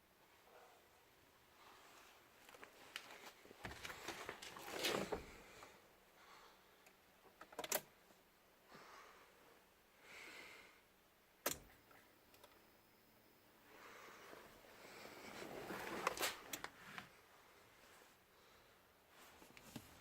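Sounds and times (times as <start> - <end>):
rustling: 1.8 - 5.6, 14.3 - 17.2.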